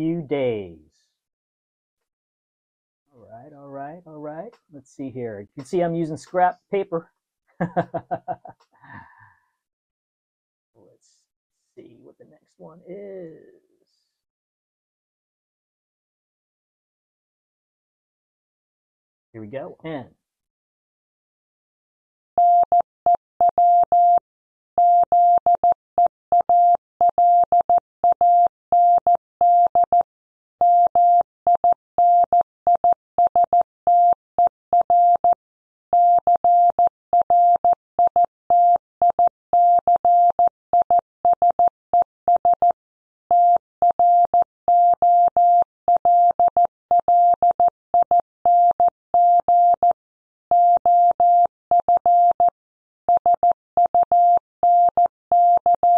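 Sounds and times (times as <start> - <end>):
morse code beeps: 22.4 - 24.2, 30.6 - 35.3, 36.0 - 41.7, 42.3 - 52.5, 53.1 - 55.9.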